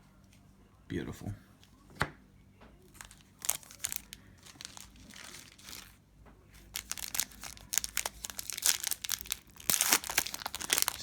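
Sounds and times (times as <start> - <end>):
foil wrapper crinkling and tearing: 2.9 - 11.0.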